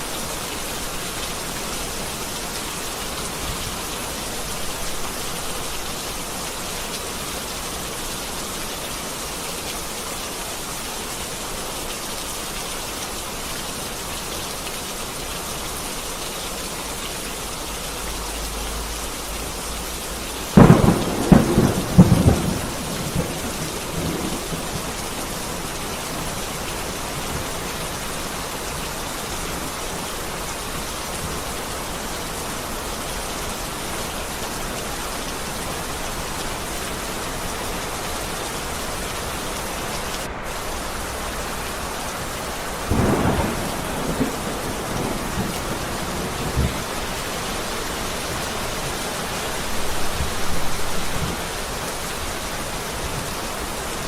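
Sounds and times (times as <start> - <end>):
heavy rain: 0.0 - 54.0
thunderclap rolling: 20.6 - 26.6, 42.8 - 47.2.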